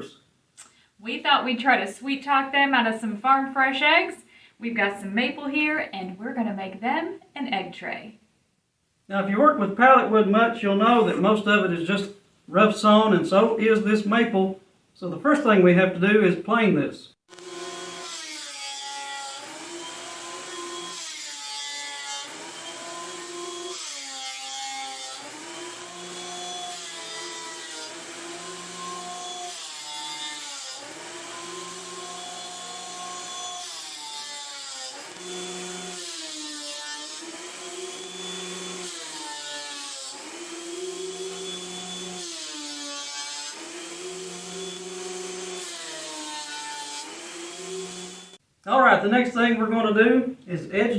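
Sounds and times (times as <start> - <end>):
electric planer cutting wood: 17.3 - 48.4.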